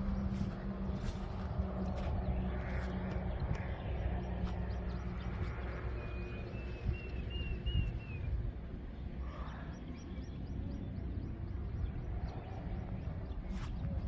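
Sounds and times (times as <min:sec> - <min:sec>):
birds chirping: 0:00.0 - 0:14.0
wind rumbling on microphone: 0:00.0 - 0:14.0.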